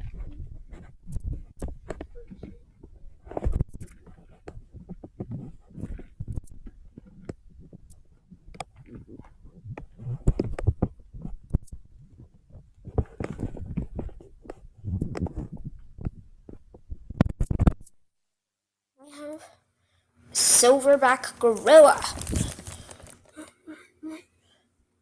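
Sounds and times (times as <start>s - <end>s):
rummaging and handling objects: 21.4s - 23.3s.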